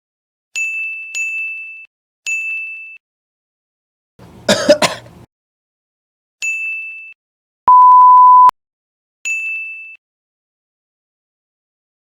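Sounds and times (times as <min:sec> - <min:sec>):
person coughing: 0:04.2 - 0:05.2
high-pitched censor bleep: 0:07.7 - 0:08.5.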